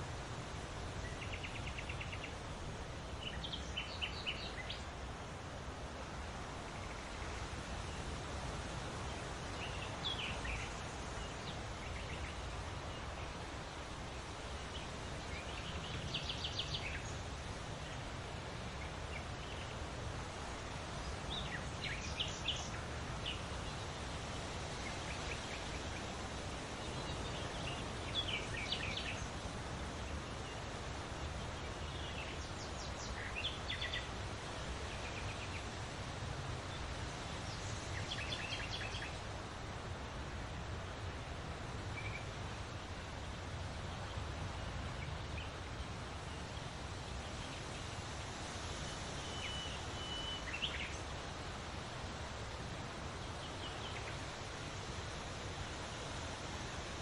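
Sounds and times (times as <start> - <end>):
wind through leaves: 0.0 - 57.0
birds singing: 36.7 - 39.2, 49.2 - 51.1.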